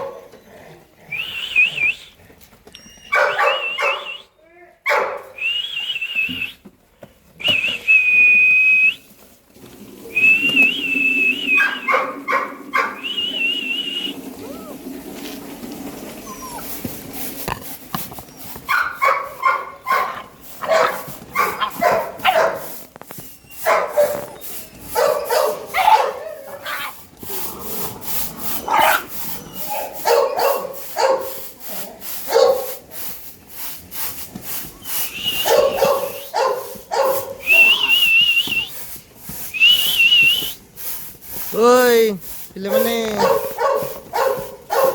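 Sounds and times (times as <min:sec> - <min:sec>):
puppies whining: 0:02.7 - 0:04.2, 0:10.2 - 0:17.4, 0:23.1 - 0:27.0, 0:28.5 - 0:30.6, 0:35.0 - 0:38.7
puppies yipping and barking: 0:02.8 - 0:04.2, 0:10.8 - 0:17.4, 0:18.0 - 0:32.8, 0:34.8 - 0:38.2, 0:42.6 - 0:44.9.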